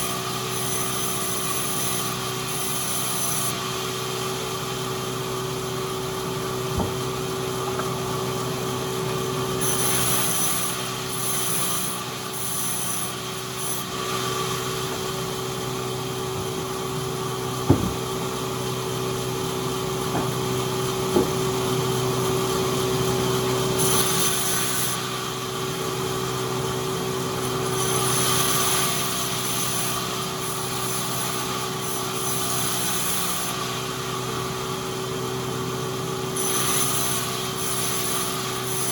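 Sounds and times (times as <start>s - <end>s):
sawmill machinery motor drone: 0.0s - 38.9s
sharp knocks: 17.6s - 18.4s, 20.0s - 20.5s, 21.1s - 21.5s.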